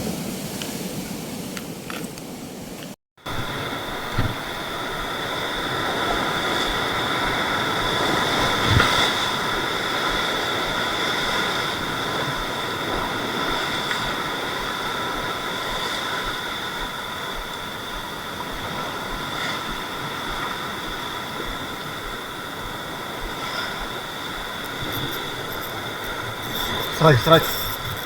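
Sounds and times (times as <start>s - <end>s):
surf breaking against rocks: 3.3s - 28.0s.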